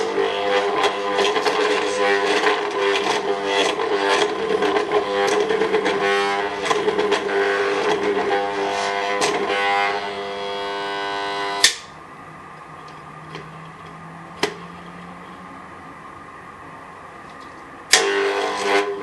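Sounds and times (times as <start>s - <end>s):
sharp click: 11.6s - 11.9s.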